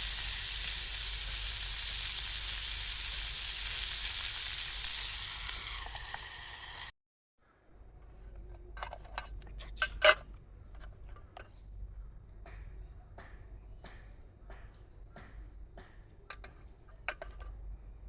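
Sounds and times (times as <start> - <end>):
food sizzling in a pan: 0.0 - 6.9.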